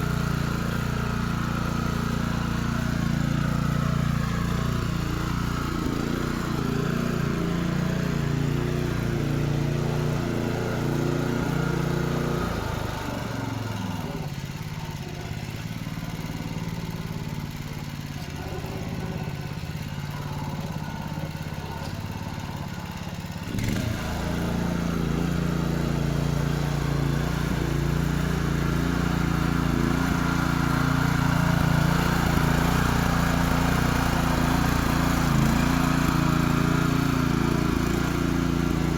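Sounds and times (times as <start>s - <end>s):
small tractor engine running: 0.0s - 38.9s.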